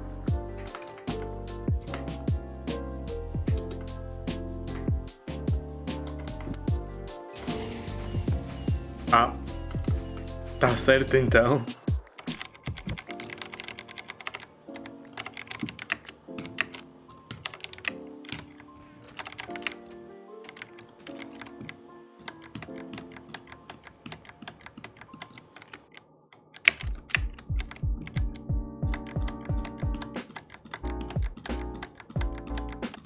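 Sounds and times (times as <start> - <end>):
background music: 0.0 - 33.0
deep thumps: 7.4 - 10.7
mechanical keyboard typing: 11.5 - 19.8, 20.5 - 33.0.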